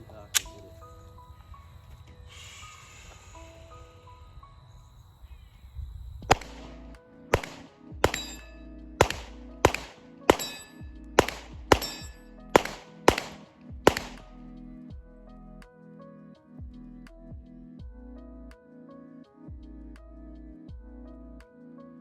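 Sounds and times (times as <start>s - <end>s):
pistol shots with echo: 6.3s - 14.2s.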